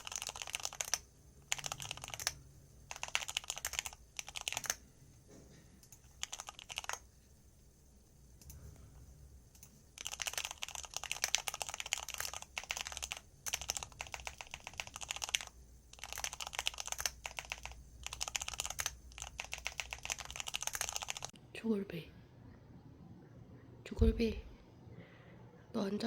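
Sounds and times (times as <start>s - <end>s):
typing on computer keyboard: 0.0s - 4.8s, 5.8s - 7.1s, 9.5s - 21.4s.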